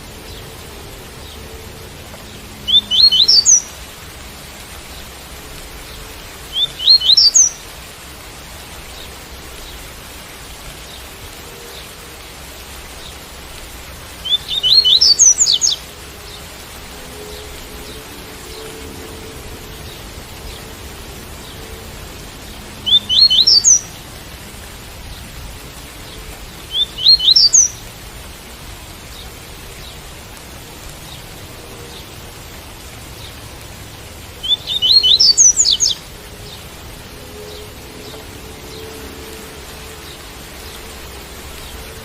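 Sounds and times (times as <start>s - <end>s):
rain hiss: 0.0s - 42.0s
bird singing whistled notes: 2.6s - 3.7s, 6.5s - 7.6s, 14.2s - 15.8s, 22.8s - 23.9s, 26.7s - 27.8s, 34.4s - 36.6s.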